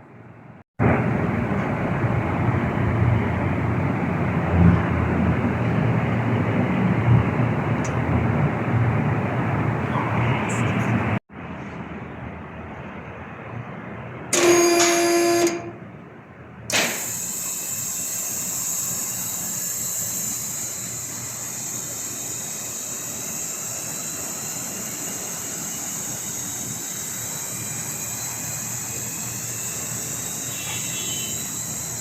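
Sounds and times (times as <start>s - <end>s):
loud horn-like tone: 14.4s - 15.8s, 28.4s - 32.0s
hiss with high whistling tones: 17.3s - 32.0s.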